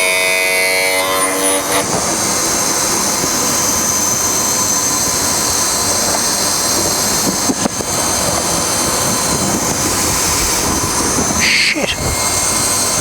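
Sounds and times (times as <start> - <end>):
grinding wheel whine: 0.0 - 13.0.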